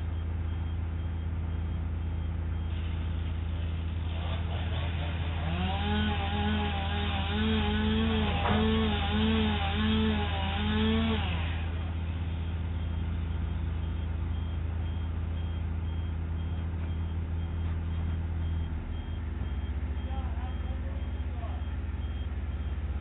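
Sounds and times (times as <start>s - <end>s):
faint reversing alarm beeps: 0.0s - 4.1s, 11.6s - 23.0s
large engine humming: 0.0s - 23.0s.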